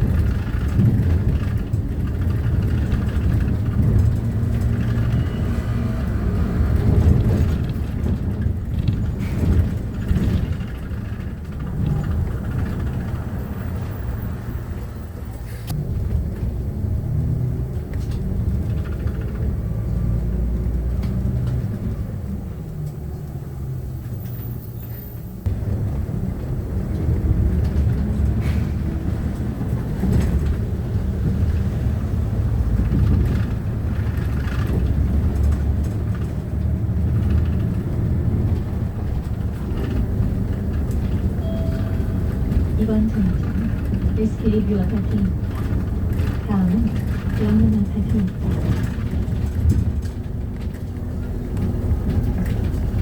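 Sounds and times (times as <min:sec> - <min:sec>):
bus engine and road rumble: 0:00.0 - 0:53.0.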